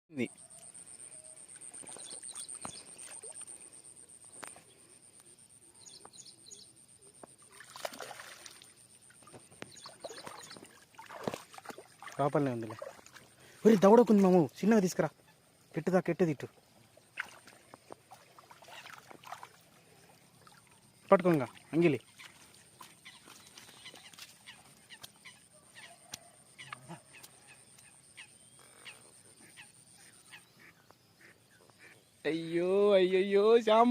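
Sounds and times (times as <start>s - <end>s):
small birds chirping: 0.1s - 33.9s
water splashing: 7.5s - 14.5s, 16.4s - 25.4s.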